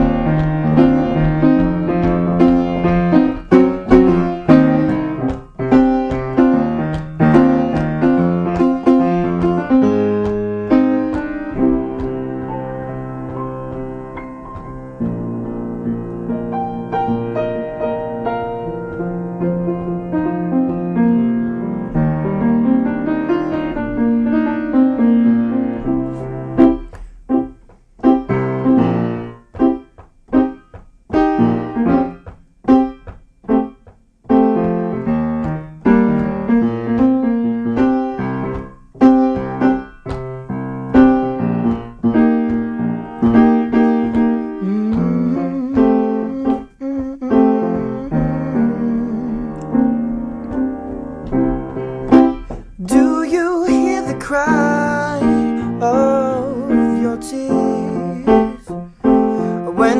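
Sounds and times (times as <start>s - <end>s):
solo piano chords: 0.0s - 59.9s.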